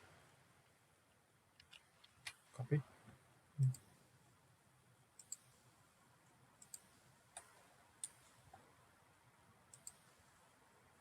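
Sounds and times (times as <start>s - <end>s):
faint computer mouse clicks: 5.2s - 5.5s, 6.6s - 8.4s, 9.7s - 10.1s.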